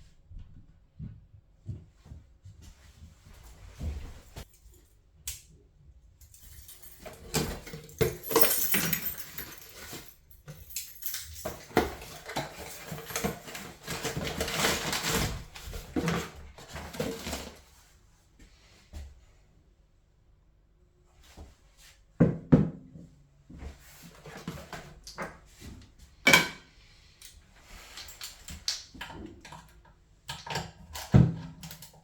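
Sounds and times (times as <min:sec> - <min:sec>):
metal tools clinking and scraping: 0:06.2 - 0:15.4.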